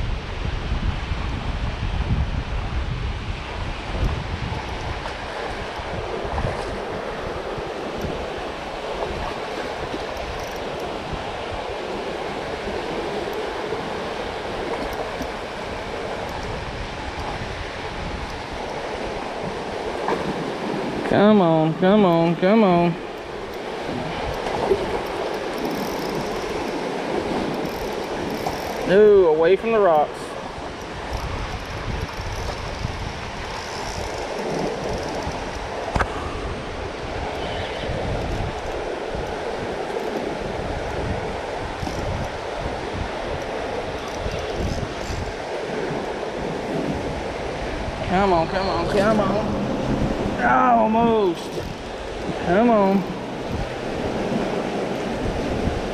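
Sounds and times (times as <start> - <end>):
floodwater rushing in creek: 0.0 - 55.9
low rumble: 48.0 - 52.4.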